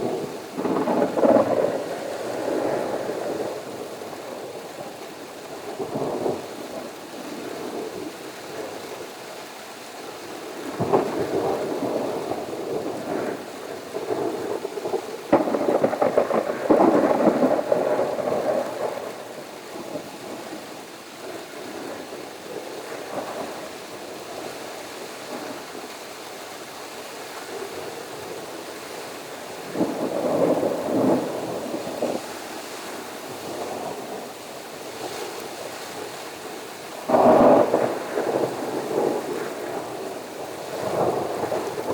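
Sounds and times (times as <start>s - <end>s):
thunder rolling: 0.0s - 4.6s, 10.7s - 20.5s, 29.6s - 32.3s, 37.0s - 41.9s
steady rain: 0.0s - 41.9s.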